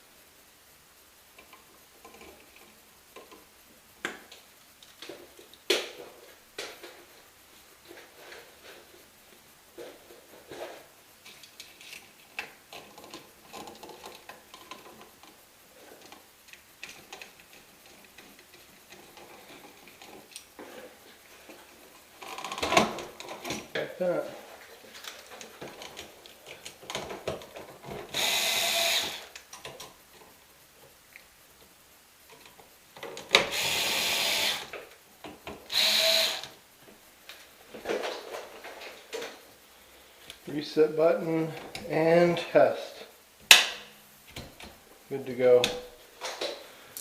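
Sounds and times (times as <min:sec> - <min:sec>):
screwdriver tightening screws: 0:28.1 - 0:29.3, 0:33.5 - 0:34.7, 0:35.7 - 0:36.5.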